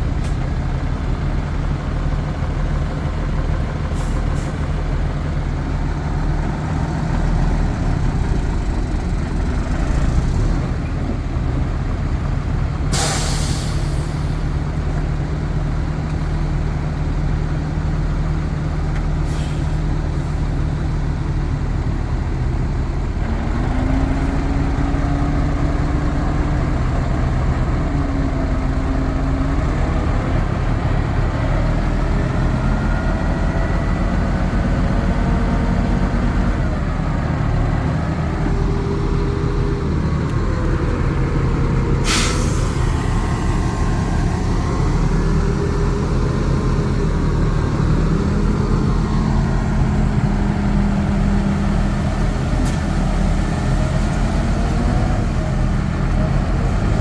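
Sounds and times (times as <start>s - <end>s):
heavy diesel engines running: 0.0s - 57.0s
air brake hiss: 12.9s - 14.5s, 19.2s - 20.5s, 42.0s - 43.3s.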